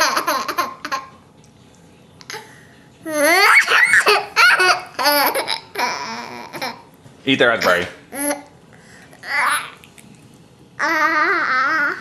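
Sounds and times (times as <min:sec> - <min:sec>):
toddler laughing: 0:00.0 - 0:01.1, 0:03.1 - 0:06.9.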